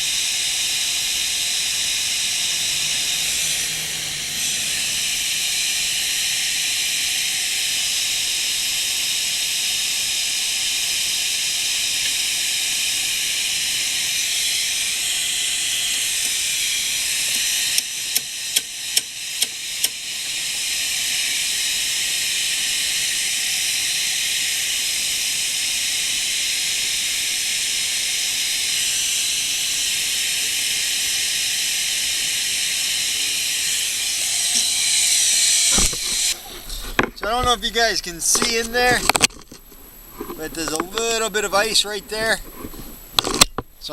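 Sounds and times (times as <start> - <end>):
hair dryer blowing: 0.0 - 39.2
sharp clicks: 35.7 - 42.5.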